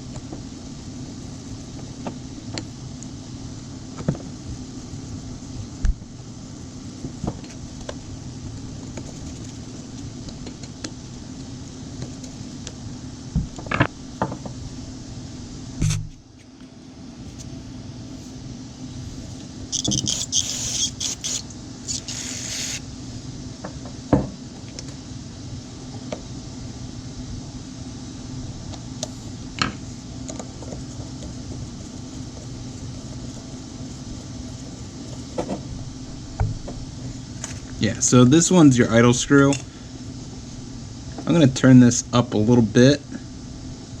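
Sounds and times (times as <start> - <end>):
low machine hum: 0.0 - 44.0
small parts knocking and clicking: 19.8 - 22.3
short hissing bursts: 19.8 - 22.8.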